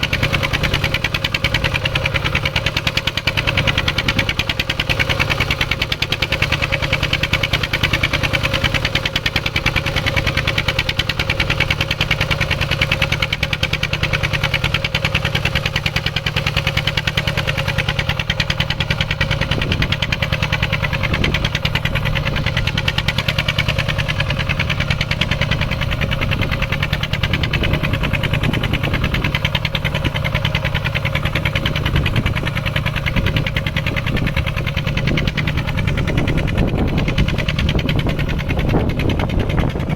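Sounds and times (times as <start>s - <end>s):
small tractor engine running: 0.0s - 39.9s.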